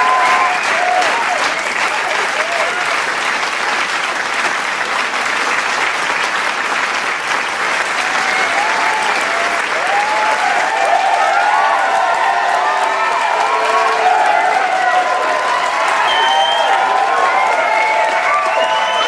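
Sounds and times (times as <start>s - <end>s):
crowd cheering and whooping: 0.0s - 3.0s, 7.8s - 19.0s
audience applauding: 0.0s - 19.0s.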